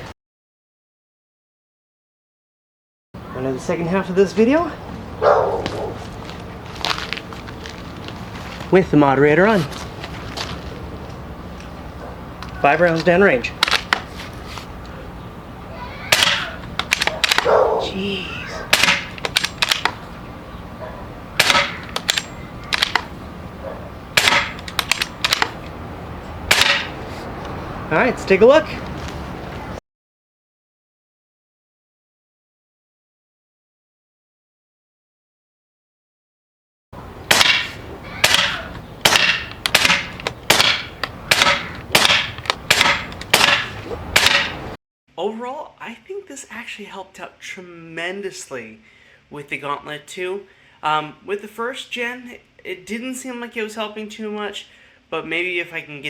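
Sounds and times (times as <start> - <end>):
sharp clicks: 16.1 - 17.5, 18.8 - 20.0, 21.4 - 23.1, 24.2 - 25.6
air rifle shots: 16.1 - 17.6, 18.7 - 20.0, 21.4 - 23.2, 24.2 - 25.6, 26.5 - 27.0, 37.3 - 44.7.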